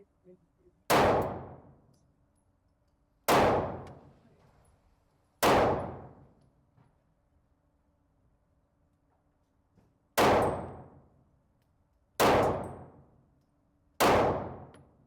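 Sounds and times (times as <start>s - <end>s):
handgun shots with echo: 0.9s - 1.7s, 3.3s - 4.0s, 5.4s - 6.2s, 10.2s - 10.9s, 12.2s - 13.0s, 14.0s - 14.9s.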